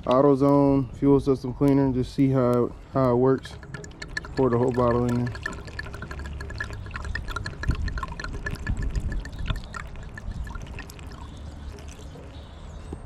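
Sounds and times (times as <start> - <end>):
liquid glugging into fuel filler: 3.4 - 12.6.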